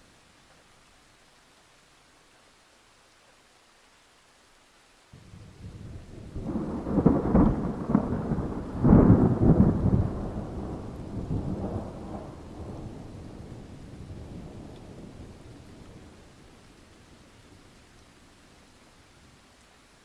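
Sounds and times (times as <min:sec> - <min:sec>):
thunder rumble: 0:05.2 - 0:16.5.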